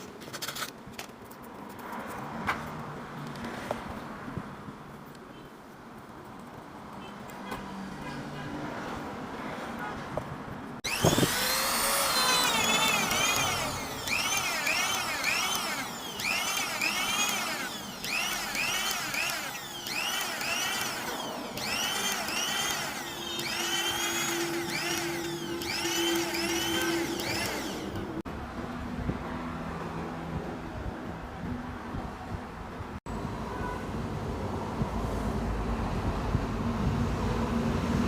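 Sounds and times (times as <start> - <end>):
power sander on metal: 10.8 - 28.2.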